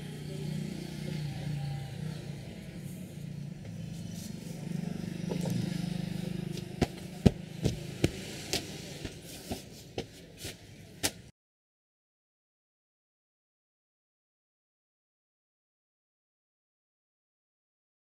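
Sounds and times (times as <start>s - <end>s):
street traffic rumbling: 0.0s - 11.3s
hands slapping head: 11.0s - 11.2s.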